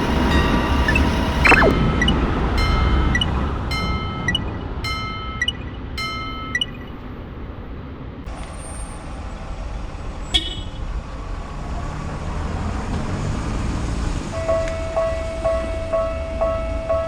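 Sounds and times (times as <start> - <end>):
railroad crossing warning signal: 0.0 - 7.8, 14.3 - 17.0
low rumble: 0.9 - 7.8.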